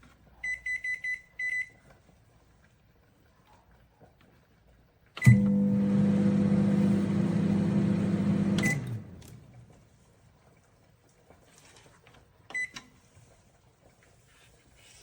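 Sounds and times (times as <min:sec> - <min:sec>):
microwave beep: 0:00.4 - 0:01.8, 0:05.2 - 0:09.3, 0:12.5 - 0:12.9
microwave click: 0:05.2 - 0:09.5
microwave oven humming: 0:05.2 - 0:09.7.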